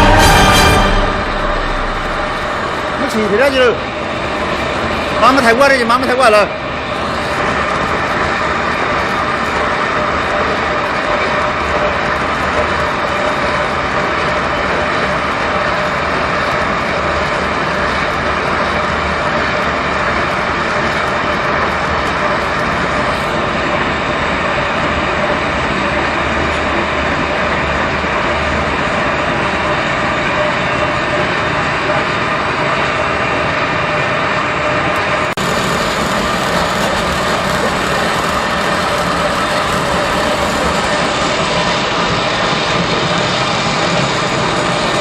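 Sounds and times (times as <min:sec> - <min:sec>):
dust vacuum: 0:00.0 - 0:25.1, 0:35.0 - 0:45.0
concrete floor grinder running: 0:00.0 - 0:45.0.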